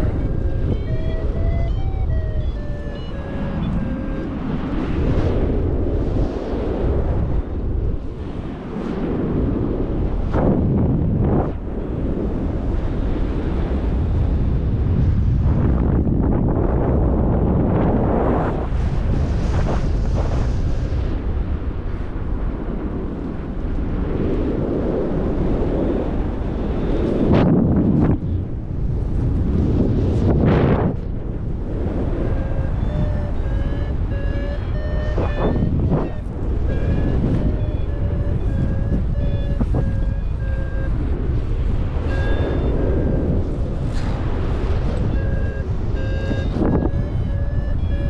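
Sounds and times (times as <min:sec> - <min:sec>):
variometer beeping: 0:00.0 - 0:04.8, 0:31.9 - 0:41.1, 0:41.9 - 0:43.4, 0:44.8 - 0:48.0
wind rushing over microphone: 0:00.0 - 0:48.0.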